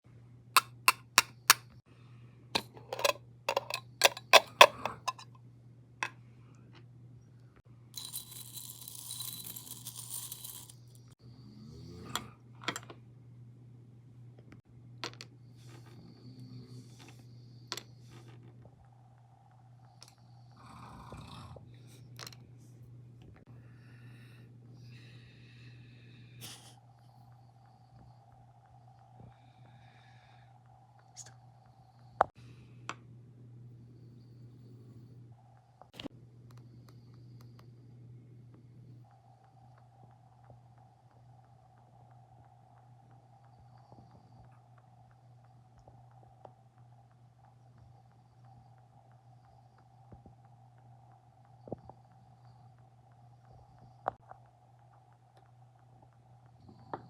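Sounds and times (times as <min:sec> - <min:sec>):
faint low hum: 0:00.1 - 0:57.0
faint rasping snoring: 0:11.2 - 0:12.4, 0:15.7 - 0:18.1, 0:20.4 - 0:21.9.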